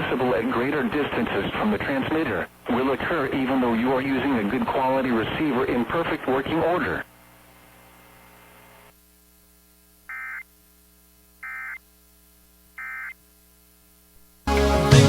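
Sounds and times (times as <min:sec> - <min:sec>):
faint steady hum: 0:00.0 - 0:14.5
warbling digital data tones: 0:11.4 - 0:11.8, 0:12.8 - 0:13.2
loud music: 0:14.5 - 0:15.0.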